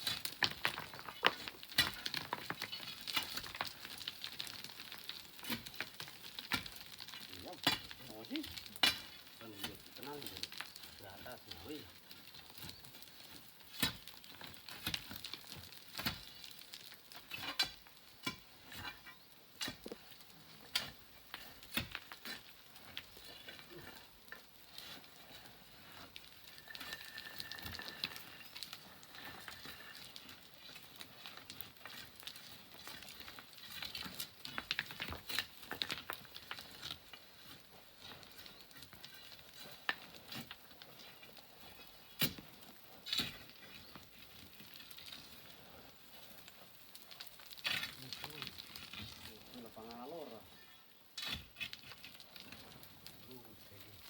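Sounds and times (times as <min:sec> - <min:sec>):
pebble strikes: 0:00.0 - 0:18.4, 0:26.1 - 0:36.9
sand and pebbles trickling: 0:00.0 - 0:54.0.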